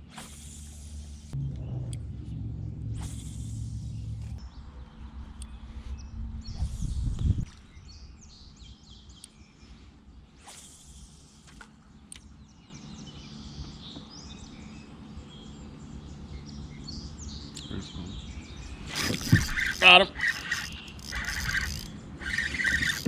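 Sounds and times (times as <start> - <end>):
low steady outdoor rumble: 0.0 - 23.0
birds chirping and singing: 3.0 - 10.4, 12.2 - 23.0
short clicks: 18.9 - 23.0.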